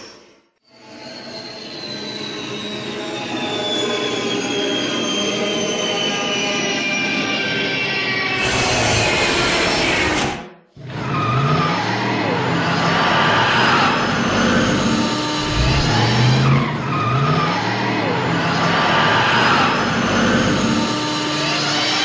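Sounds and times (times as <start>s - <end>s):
car engine revving: 14.3s - 18.7s
tyre squeal: 15.4s - 17.8s.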